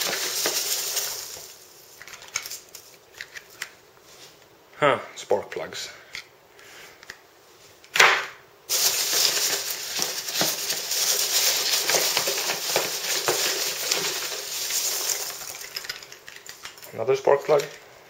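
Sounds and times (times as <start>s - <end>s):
packaging ripping: 0.0s - 1.6s, 8.7s - 15.9s
packing material crinkling: 0.0s - 3.6s, 8.7s - 16.8s.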